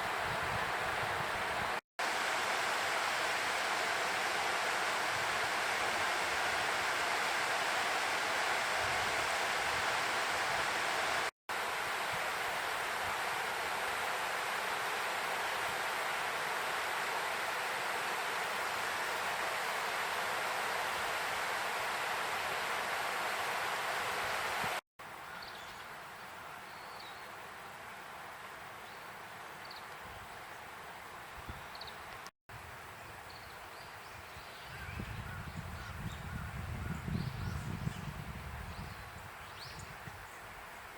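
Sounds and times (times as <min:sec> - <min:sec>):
river water rushing: 0:00.0 - 0:24.8.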